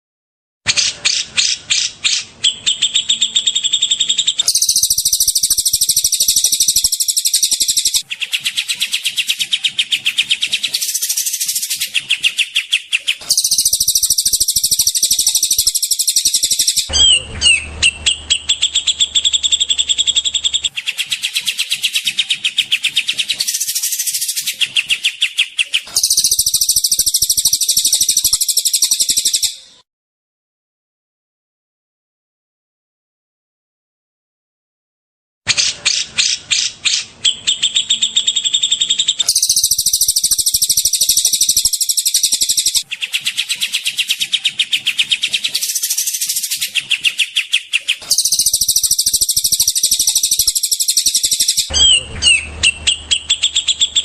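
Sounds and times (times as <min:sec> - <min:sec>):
songbirds trilling: 0:00.7 - 0:29.8, 0:35.5 - 0:54.0.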